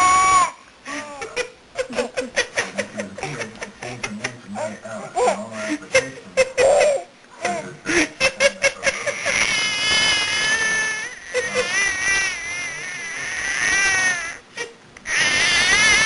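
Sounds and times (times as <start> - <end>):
person laughing strangely: 0.9 - 3.6, 5.6 - 9.7, 10.4 - 12.4.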